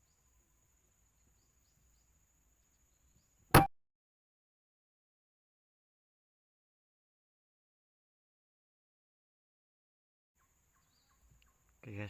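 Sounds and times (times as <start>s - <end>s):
insects buzzing and chirping: 0.0s - 3.5s, 10.4s - 12.0s.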